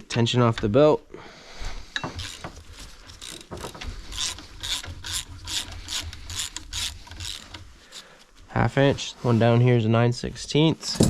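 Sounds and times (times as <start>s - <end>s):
ratchet wrench clicking: 2.2s - 7.6s.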